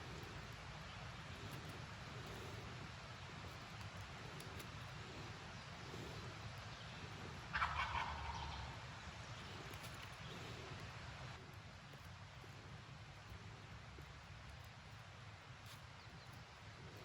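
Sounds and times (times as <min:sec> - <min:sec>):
turkey gobbling: 0:07.4 - 0:08.8.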